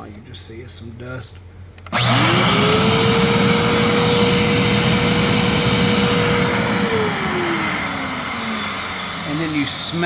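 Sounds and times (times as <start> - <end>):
vacuum cleaner running: 2.0 - 10.0.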